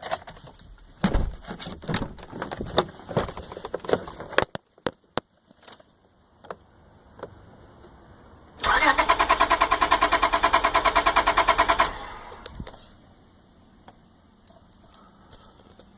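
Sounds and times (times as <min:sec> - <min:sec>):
engine cranking by starter motor: 0:08.6 - 0:12.7.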